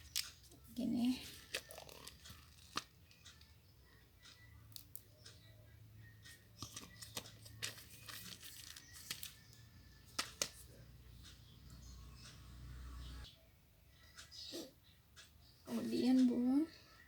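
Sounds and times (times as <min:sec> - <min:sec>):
rustling and crinkling craft materials: 0:00.0 - 0:03.5, 0:06.3 - 0:10.8.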